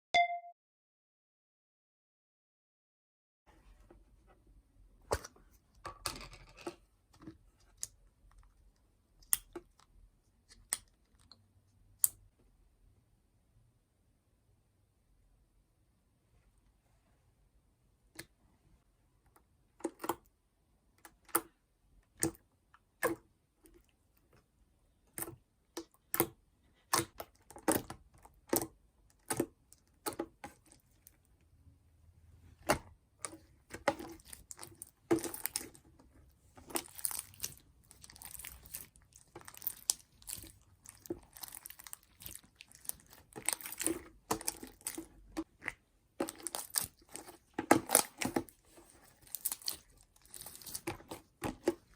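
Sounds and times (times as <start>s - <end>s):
slime popping and squishing: 33.8s - 35.8s, 36.6s - 51.9s.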